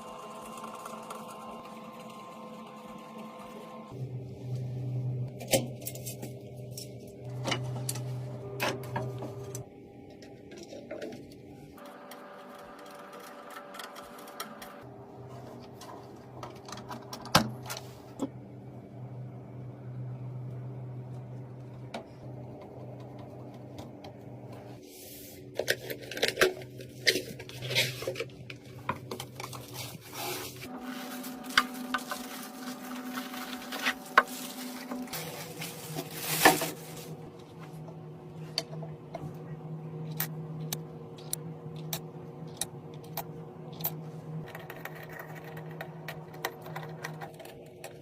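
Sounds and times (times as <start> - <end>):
steady hum: 26.5 - 48.0.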